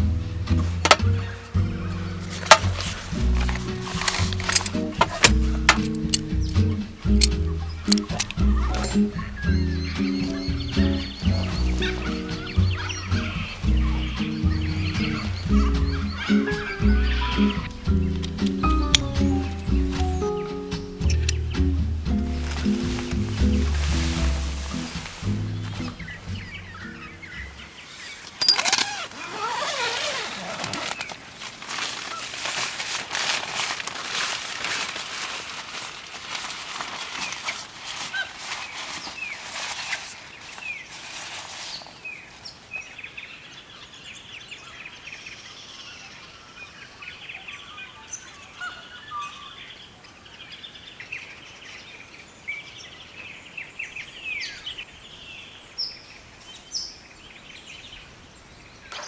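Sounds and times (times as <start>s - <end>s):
small birds chirping: 0.0s - 32.9s, 37.1s - 59.0s
kookaburras calling: 0.8s - 30.8s.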